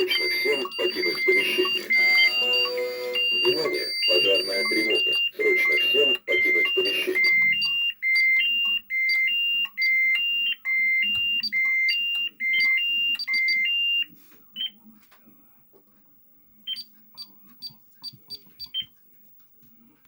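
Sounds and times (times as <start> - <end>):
fire alarm two-tone beeping: 0.0 - 14.7.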